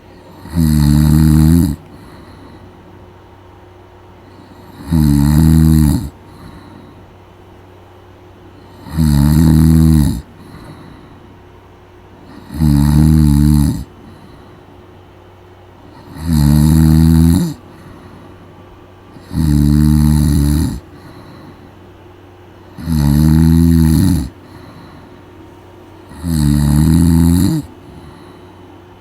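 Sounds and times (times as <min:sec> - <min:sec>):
loud snoring: 0:00.1 - 0:02.7, 0:04.3 - 0:06.9, 0:08.6 - 0:11.1, 0:12.2 - 0:14.4, 0:15.9 - 0:18.2, 0:19.1 - 0:21.6, 0:22.7 - 0:25.0, 0:26.0 - 0:28.5.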